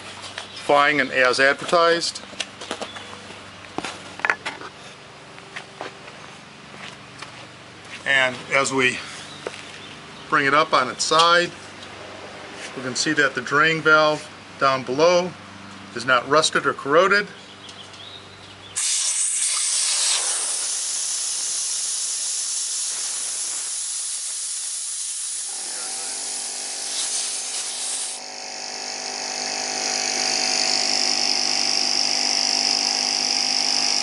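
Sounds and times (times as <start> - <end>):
compressor motor running: 18.7 - 34.0
compressed air hissing: 18.8 - 34.0.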